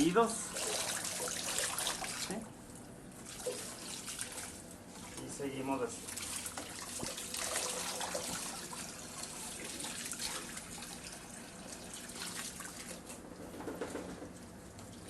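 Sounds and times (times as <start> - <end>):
running water splashing: 0.4 - 2.4, 3.2 - 13.1.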